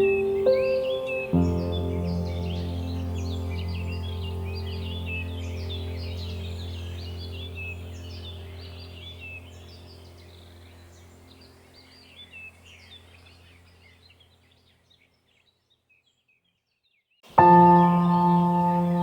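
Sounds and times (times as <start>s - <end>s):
birds chirping: 0.0s - 19.0s
low steady drone: 1.3s - 13.5s.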